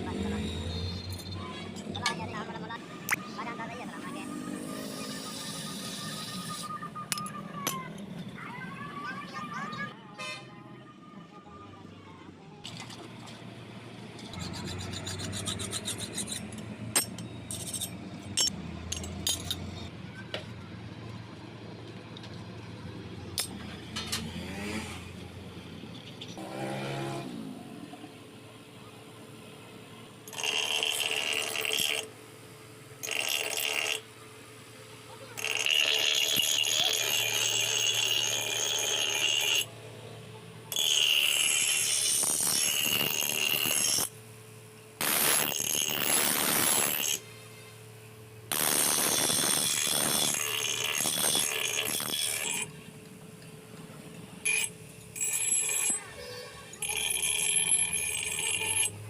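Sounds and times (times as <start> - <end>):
power grinder on steel: 4.0 - 6.7, 14.2 - 19.6, 30.3 - 32.1, 33.0 - 34.0, 35.3 - 39.7, 40.7 - 44.2, 45.0 - 47.3, 48.5 - 52.7, 54.4 - 59.0.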